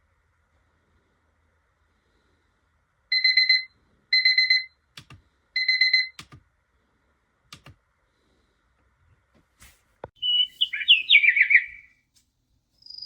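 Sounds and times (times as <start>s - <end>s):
alarm clock beeping: 3.1s - 4.7s
sharp clicks: 7.5s - 7.8s.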